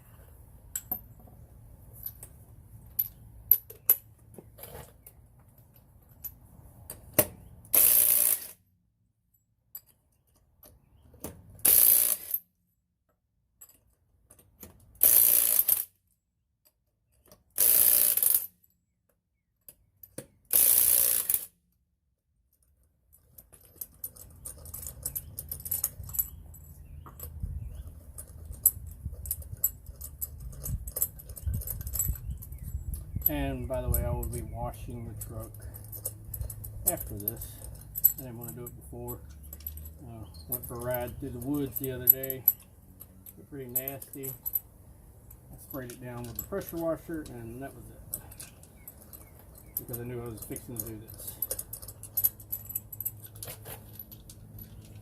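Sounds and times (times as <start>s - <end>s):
cordless power tool bursts: 7.8s - 8.6s, 20.5s - 21.5s
metallic clinks of tools: 22.6s - 55.0s.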